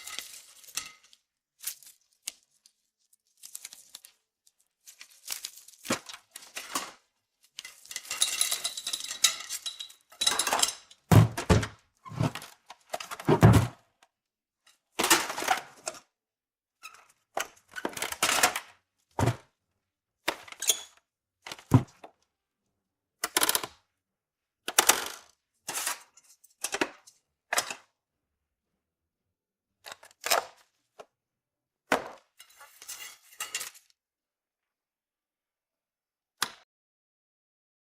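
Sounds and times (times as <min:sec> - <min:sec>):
small objects clattering and clinking: 0:00.0 - 0:13.7, 0:32.3 - 0:33.9.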